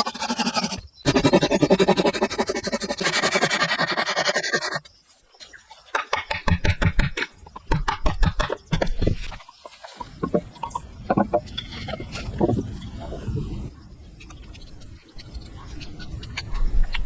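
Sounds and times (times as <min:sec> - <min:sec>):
hand tool rasping wood: 0:00.0 - 0:04.8.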